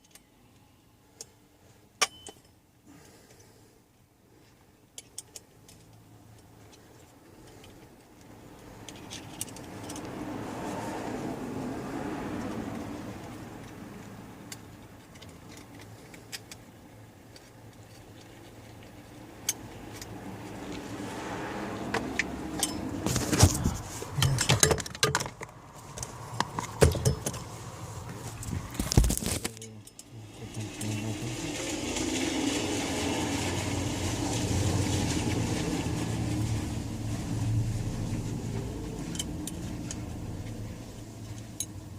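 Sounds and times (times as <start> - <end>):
small clicks and rustling: 4.4 - 10.2, 12.4 - 20.9, 21.9 - 30.9
hard parts clattering: 22.5 - 27.6.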